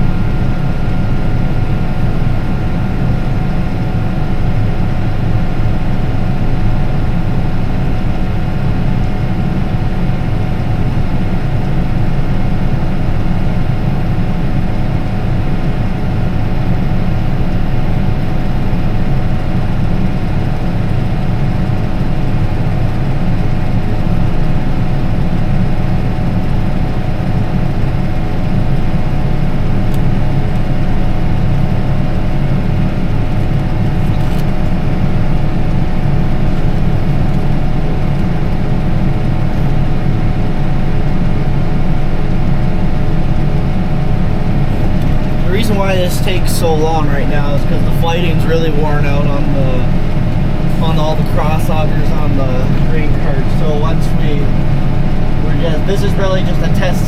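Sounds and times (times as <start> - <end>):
faint steady whine: 0.0 - 57.0
tractor engine under load: 29.8 - 39.8, 43.6 - 57.0
augers unloading grain: 44.6 - 54.8, 55.4 - 57.0.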